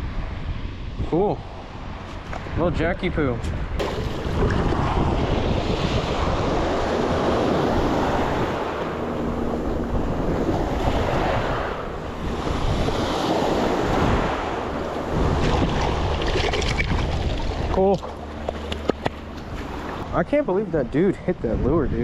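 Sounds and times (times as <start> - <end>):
wind buffeting microphone: 1.7 - 22.0
surf breaking on beach: 3.8 - 18.2.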